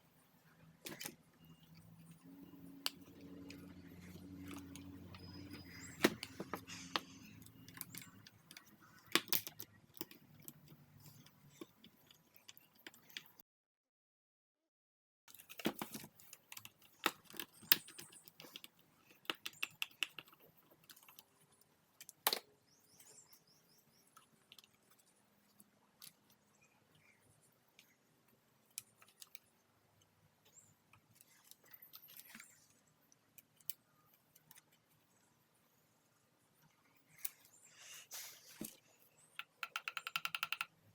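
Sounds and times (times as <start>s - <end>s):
plastic parts clicking and rattling: 0.8s - 2.2s, 2.8s - 13.4s, 15.3s - 22.5s, 38.6s - 40.8s.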